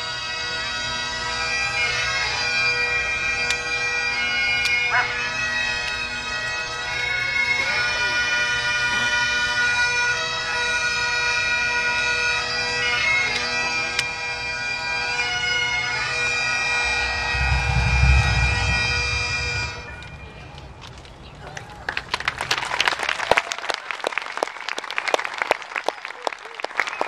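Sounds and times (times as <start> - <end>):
bagpipes playing over a drone: 0.0 - 17.3
low rumble: 16.3 - 20.8.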